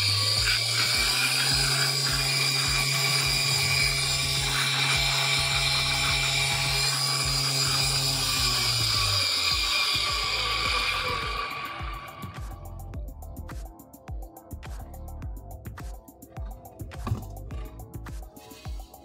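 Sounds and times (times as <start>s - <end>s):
motor high-pitched whine: 0.0s - 12.9s.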